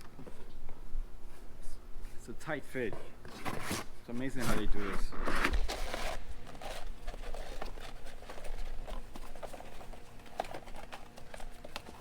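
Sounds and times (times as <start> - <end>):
cardboard box clicks and scrapes: 5.2 - 12.0.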